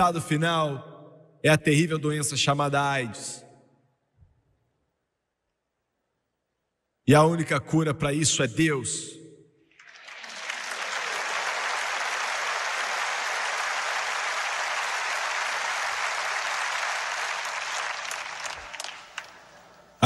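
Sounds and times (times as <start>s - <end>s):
congregation applauding: 9.7s - 20.0s.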